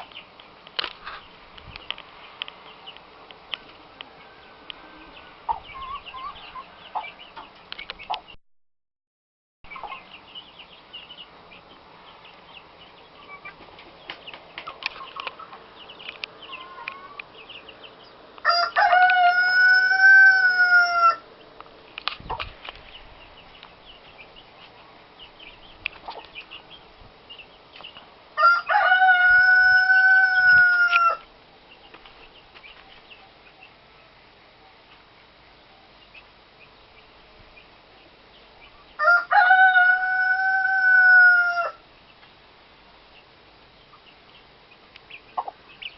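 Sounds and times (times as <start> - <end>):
chicks and birds cheeping: 0.0 - 8.4, 9.7 - 45.9
rooster crowing: 18.4 - 21.2, 28.4 - 31.2, 39.0 - 41.8.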